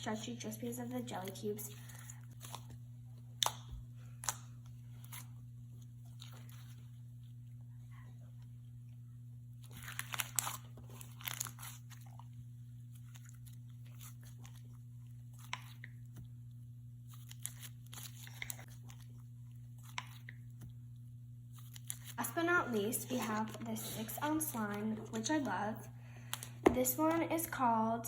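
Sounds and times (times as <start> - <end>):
slime squishing with crunchy clicks: 1.1 - 7.4, 9.5 - 16.5, 17.1 - 20.8.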